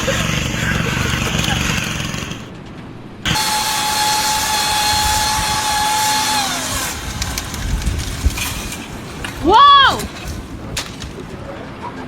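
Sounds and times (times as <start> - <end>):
power tool motor whining: 0.0 - 2.4, 3.3 - 8.9.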